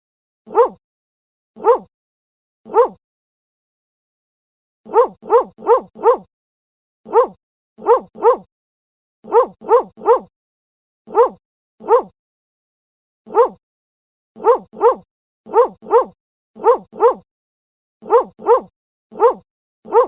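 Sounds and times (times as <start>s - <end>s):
dog barking: 0.5s - 0.8s, 1.6s - 1.9s, 2.7s - 3.0s, 4.9s - 6.3s, 7.1s - 8.5s, 9.2s - 10.3s, 11.1s - 12.2s, 13.3s - 13.6s, 14.4s - 17.3s, 18.0s - 20.0s.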